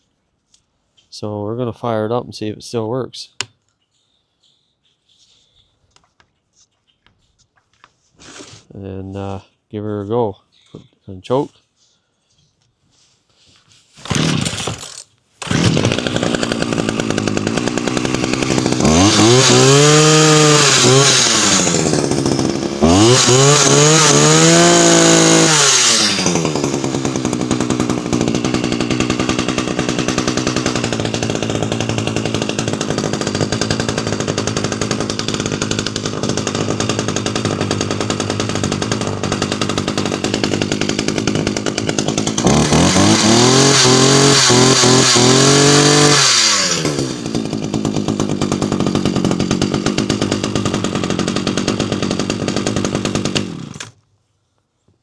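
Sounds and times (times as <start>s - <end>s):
chainsaw engine revving and idling: 14.0s - 54.0s.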